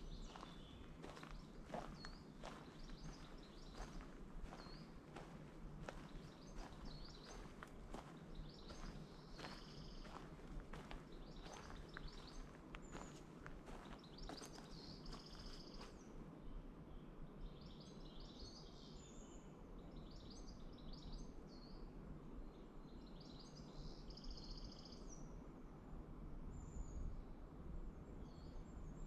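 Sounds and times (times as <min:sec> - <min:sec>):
birds singing: 0:00.0 - 0:16.2
low background noise: 0:00.0 - 0:29.0.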